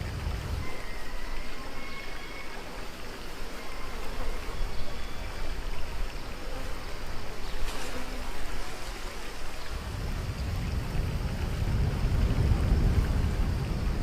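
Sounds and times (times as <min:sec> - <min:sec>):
rushing churning water: 0:00.0 - 0:04.4.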